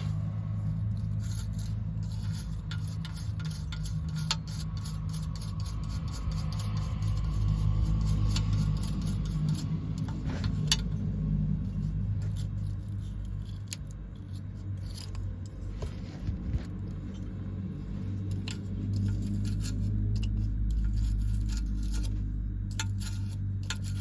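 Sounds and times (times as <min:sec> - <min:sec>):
hand tools clicking and scraping: 0:00.0 - 0:24.0
steady low hum: 0:00.0 - 0:24.0.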